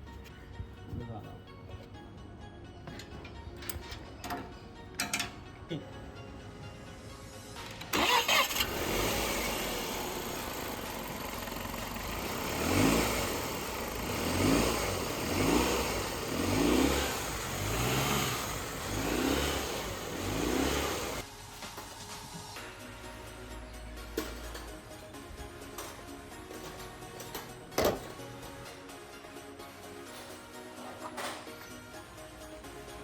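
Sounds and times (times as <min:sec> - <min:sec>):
diesel engine starting and revving: 0:07.3 - 0:21.4.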